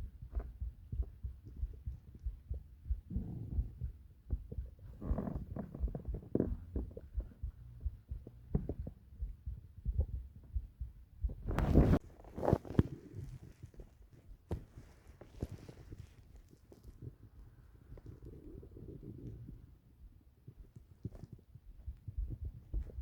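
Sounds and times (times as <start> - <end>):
heartbeat thumping: 0.0 - 23.0
stomach growls gurgling: 15.4 - 19.8.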